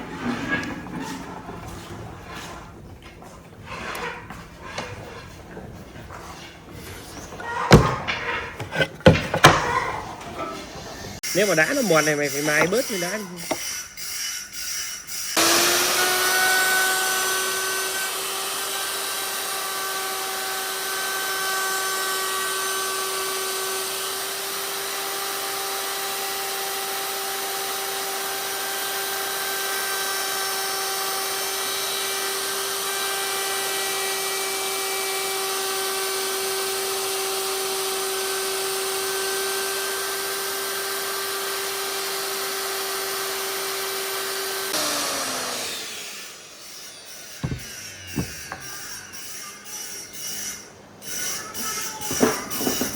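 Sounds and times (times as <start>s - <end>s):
power tool high-pitched whine: 11.2s - 52.9s.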